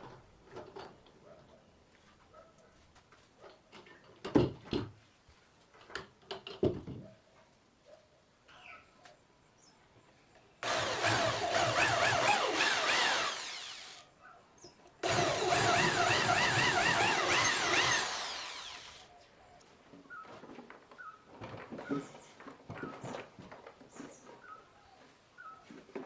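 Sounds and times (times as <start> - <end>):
power drill running: 10.6 - 14.0, 15.0 - 19.1.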